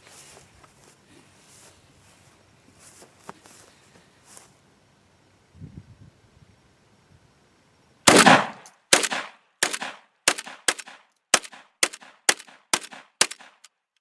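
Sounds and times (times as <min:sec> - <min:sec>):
shotgun firing rapidly: 0:08.1 - 0:13.6.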